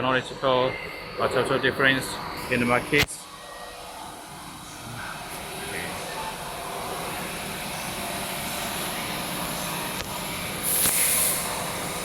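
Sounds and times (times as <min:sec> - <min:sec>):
factory machinery running: 0:00.0 - 0:12.0
loud high hiss: 0:10.6 - 0:12.0.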